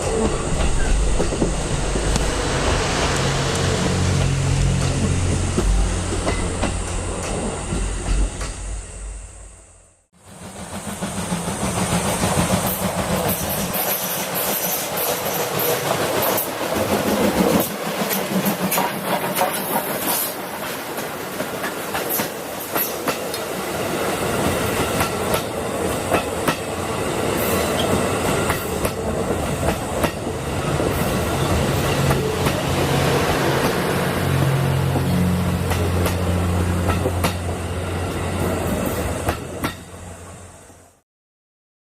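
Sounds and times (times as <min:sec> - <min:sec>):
train wheels clattering over rail joints: 0:10.5 - 0:23.5, 0:27.4 - 0:37.6.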